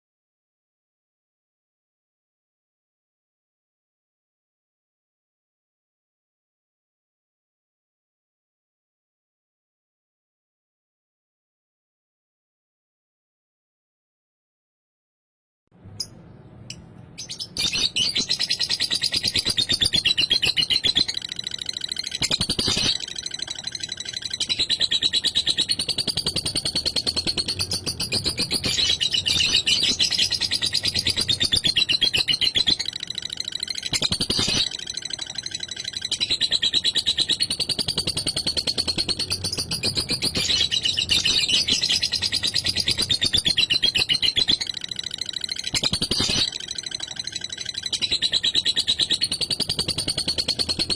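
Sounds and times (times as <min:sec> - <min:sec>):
lovebird chattering trill: 0:15.9 - 0:50.9.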